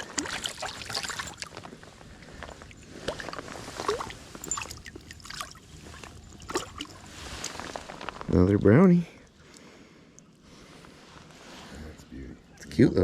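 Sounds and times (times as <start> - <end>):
creek water splashing and trickling: 0.0 - 7.6
small splashes and knocks: 0.0 - 7.6.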